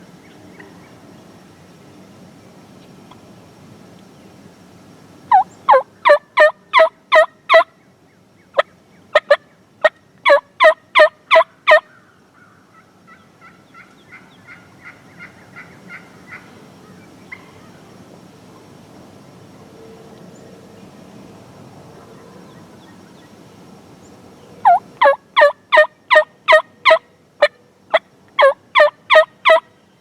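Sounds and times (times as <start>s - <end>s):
turkey yelping: 5.3s - 7.6s, 10.3s - 11.9s, 24.6s - 27.0s, 28.4s - 29.6s.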